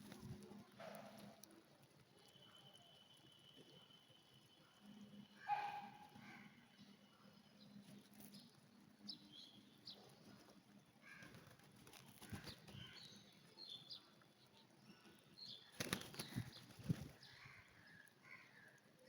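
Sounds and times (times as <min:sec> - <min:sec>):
faint high bird chirps: 0:02.0 - 0:10.2
pigeon wings flapping: 0:15.8 - 0:17.2.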